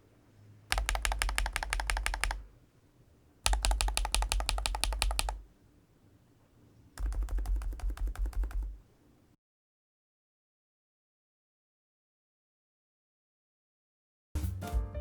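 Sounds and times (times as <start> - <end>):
keyboard typing: 0.7 - 2.5, 3.4 - 5.4, 7.0 - 8.8.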